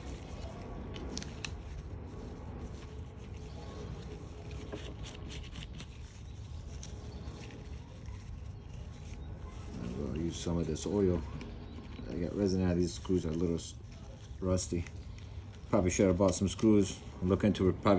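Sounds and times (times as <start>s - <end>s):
steady low hum: 0.0s - 17.9s.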